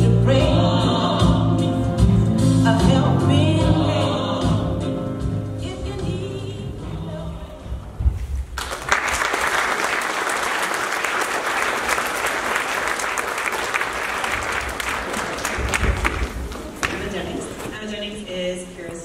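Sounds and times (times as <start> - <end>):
large audience applauding: 8.6 - 17.2.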